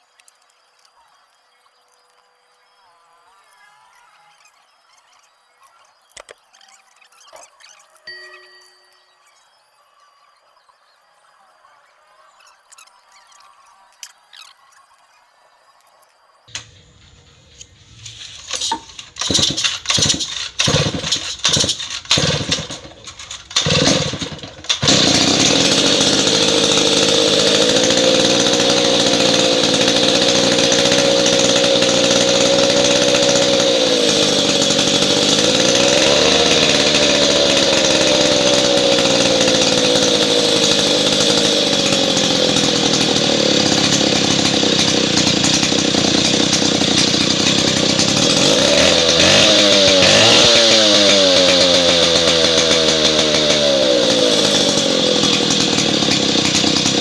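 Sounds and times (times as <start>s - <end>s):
chainsaw engine starting and running: 8.1s - 9.0s, 16.5s - 57.0s.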